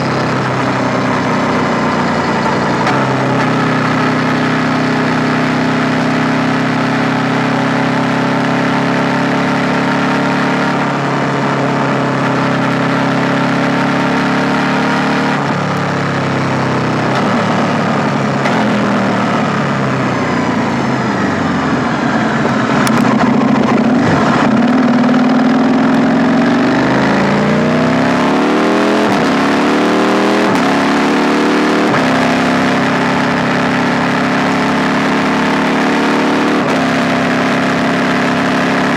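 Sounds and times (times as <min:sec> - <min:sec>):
motorcycle engine revving: 0:00.0 - 0:38.9
quick gear upshift: 0:15.4 - 0:27.8.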